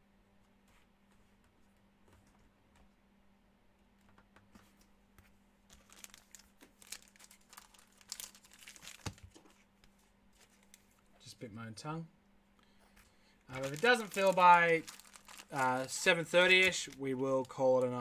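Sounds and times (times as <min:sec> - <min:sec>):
plastic wrappers crinkling and tearing: 0:05.7 - 0:09.6, 0:10.4 - 0:11.0, 0:13.5 - 0:18.0.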